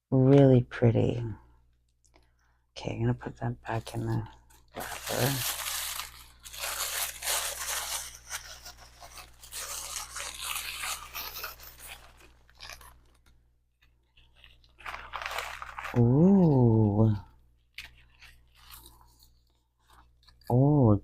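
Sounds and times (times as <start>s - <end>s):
wrapper crinkling and rustling: 4.4s - 20.5s.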